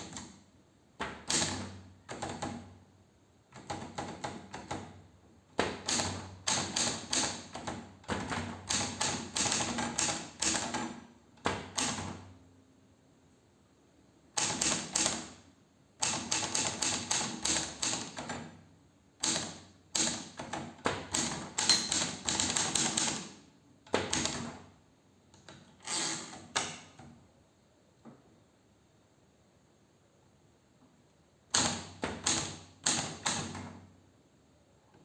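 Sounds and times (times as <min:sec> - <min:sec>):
typewriter key strikes: 0:05.8 - 0:12.1, 0:14.4 - 0:15.3, 0:16.0 - 0:18.5, 0:19.2 - 0:23.3, 0:23.9 - 0:24.6, 0:31.5 - 0:33.7.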